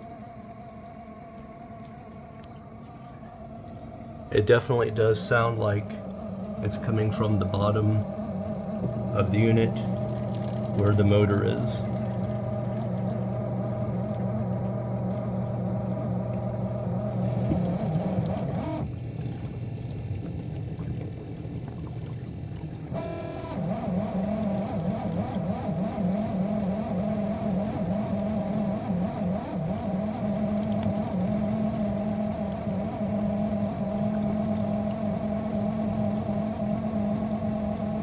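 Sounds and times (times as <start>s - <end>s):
dishwasher pump grinding hum: 0.0s - 38.0s.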